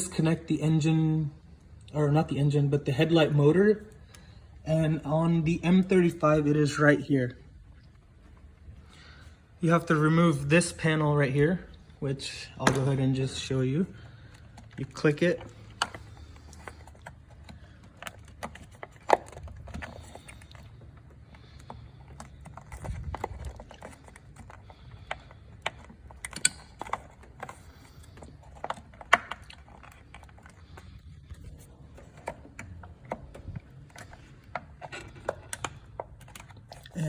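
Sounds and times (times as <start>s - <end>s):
plastic rubbing and scraping: 11.4s - 37.0s
plastic clips clicking and snapping: 14.3s - 30.9s, 31.9s - 36.8s.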